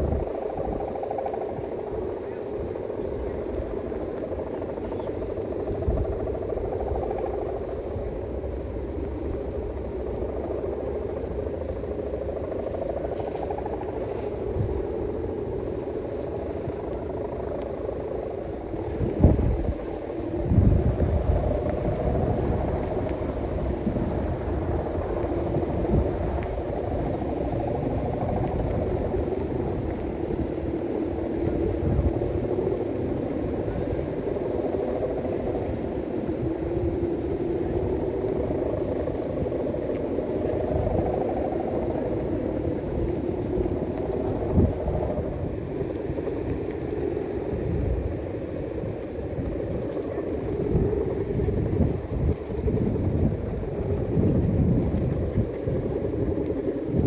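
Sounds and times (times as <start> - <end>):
steady wavering hum: 0.0 - 57.0
wind buffeting microphone: 0.0 - 57.0.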